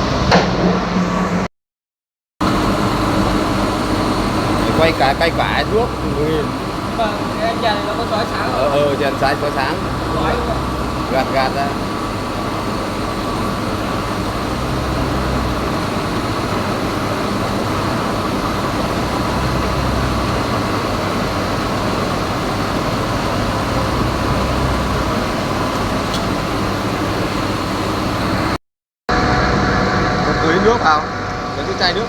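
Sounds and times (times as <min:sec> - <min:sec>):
metal lathe running: 0:02.4 - 0:32.0.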